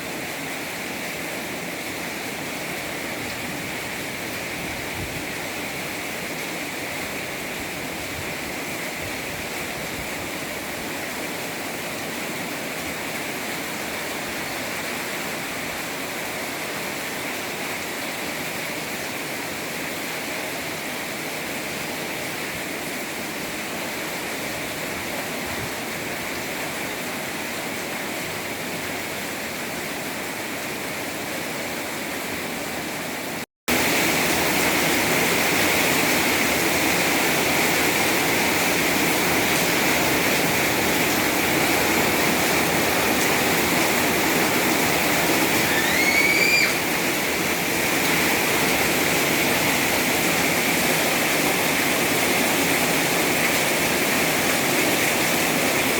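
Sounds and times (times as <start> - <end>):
heavy rain pouring: 31.8 - 55.9.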